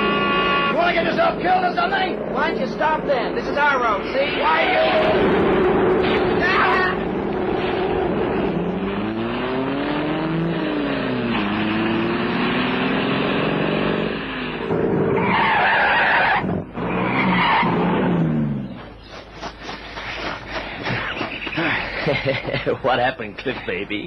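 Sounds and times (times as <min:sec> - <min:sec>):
tires squealing: 0:00.0 - 0:22.2
car engine accelerating hard: 0:05.0 - 0:15.5.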